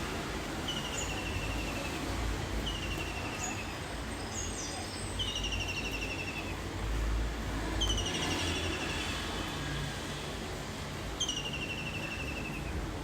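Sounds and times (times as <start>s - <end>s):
songbird trilling: 11.2s - 12.6s.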